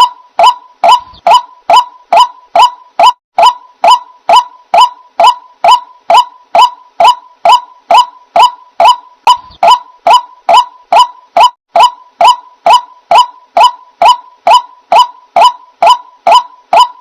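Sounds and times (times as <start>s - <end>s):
waterhen calling: 0.4s - 4.0s, 8.8s - 11.0s.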